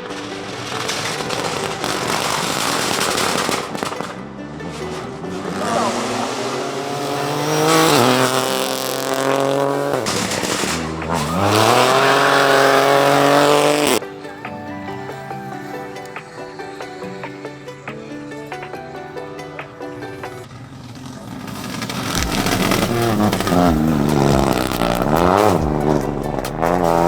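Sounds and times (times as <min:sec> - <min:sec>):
road and tyre noise: 0:00.0 - 0:14.6, 0:16.0 - 0:27.0
car engine accelerating hard: 0:00.1 - 0:14.0, 0:20.5 - 0:27.0.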